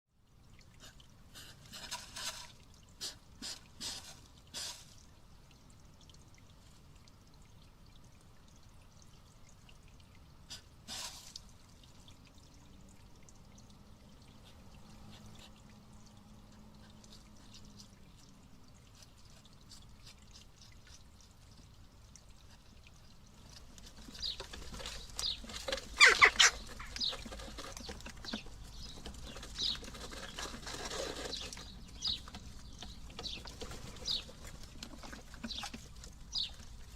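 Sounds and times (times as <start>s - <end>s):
hedgehog eating and rummaging: 0.8s - 5.0s, 16.4s - 36.9s.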